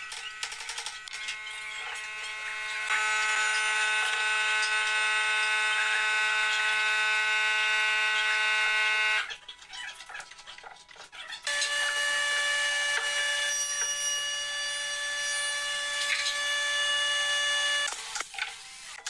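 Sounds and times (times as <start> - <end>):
power tool motor whining: 0.0 - 9.3, 11.5 - 18.2.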